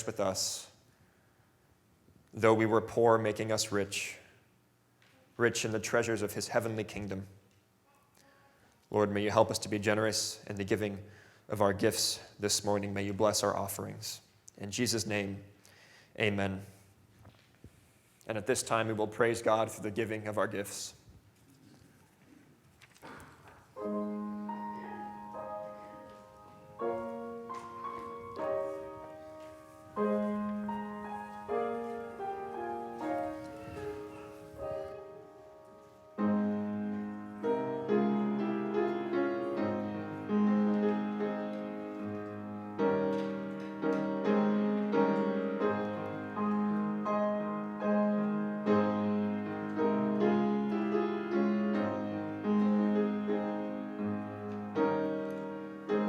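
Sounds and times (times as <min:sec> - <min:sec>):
solo piano piece: 0:23.7 - 0:56.0.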